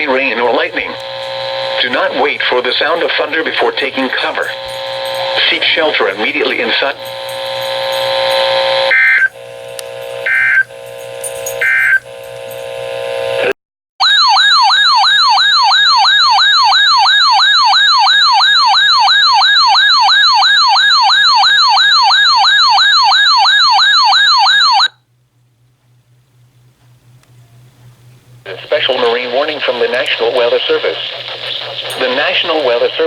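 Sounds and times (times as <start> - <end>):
data bursts: 0.0 - 12.7, 28.5 - 33.0
steady buzzy tone: 0.0 - 13.5.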